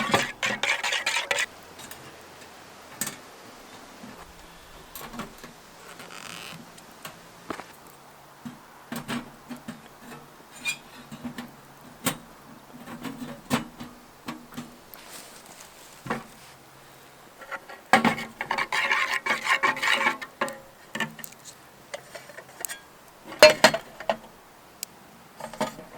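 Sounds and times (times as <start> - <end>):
utensil scraping in a metal tin: 0.0 - 1.5, 17.4 - 20.4.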